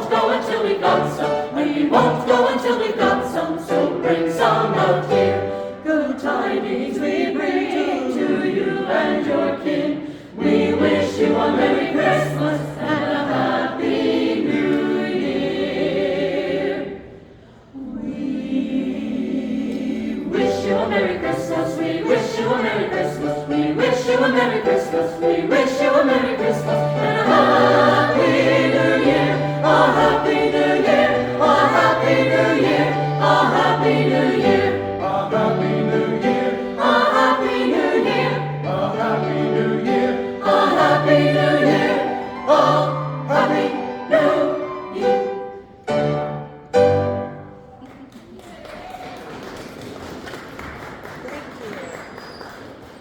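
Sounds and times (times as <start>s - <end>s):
choir singing in parts: 0.0s - 47.6s.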